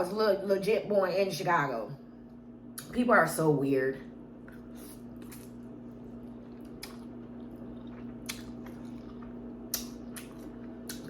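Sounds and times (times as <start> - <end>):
steady low hum: 0.0 - 11.0
person chewing noodles: 4.4 - 11.0.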